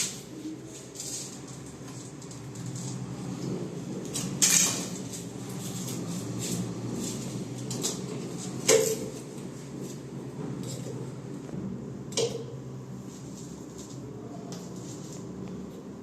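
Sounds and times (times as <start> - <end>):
plumbing tools knocking and clinking: 7.7 - 9.2.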